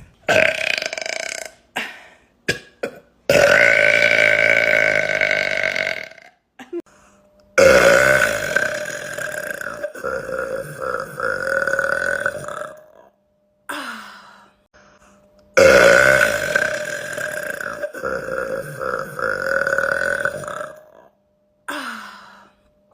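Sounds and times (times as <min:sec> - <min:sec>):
woman burping: 0:00.2 - 0:06.9, 0:15.6 - 0:22.1.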